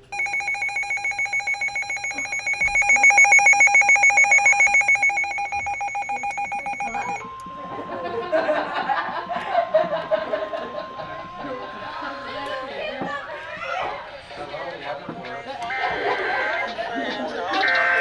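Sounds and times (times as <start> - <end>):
rapid pulsing electronic beep: 0.0 - 7.2
steady radio warning tone: 0.0 - 7.4
voices chattering: 0.0 - 8.6.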